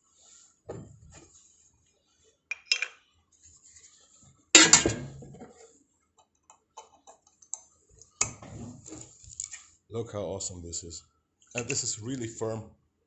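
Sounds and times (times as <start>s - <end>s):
steel parts clinking: 4.6s - 5.5s.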